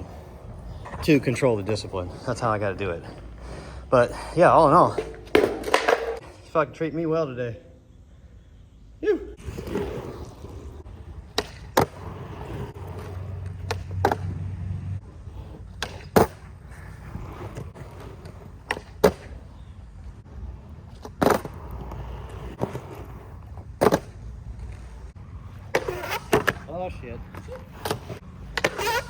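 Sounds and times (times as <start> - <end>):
skateboard wheels rumbling: 0.0 - 6.6, 9.4 - 29.0
skateboard wooden clacks: 4.7 - 6.5, 11.2 - 14.5, 15.3 - 19.4, 20.9 - 24.9, 27.3 - 29.0.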